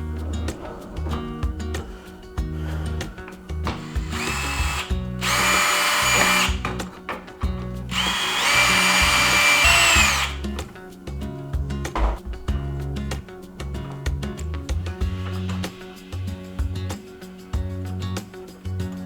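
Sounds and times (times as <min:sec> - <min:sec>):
background music: 0:00.0 - 0:19.0
power drill motor whine: 0:03.8 - 0:06.7, 0:07.9 - 0:10.4.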